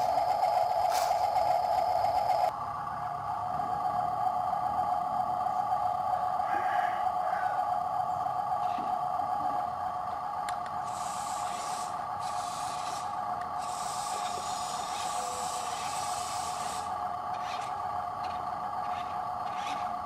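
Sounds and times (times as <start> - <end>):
wheels hissing through mud: 10.8 - 17.8.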